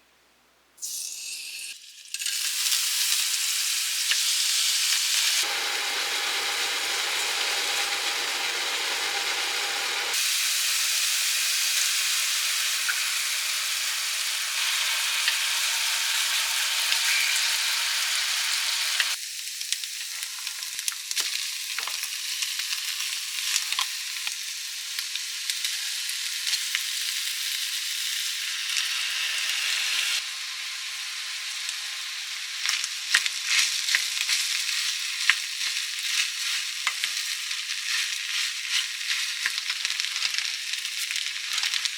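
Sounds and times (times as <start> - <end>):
food sizzling in a frying pan: 0.8 - 41.9
spatula clicking and scraping: 37.8 - 39.9.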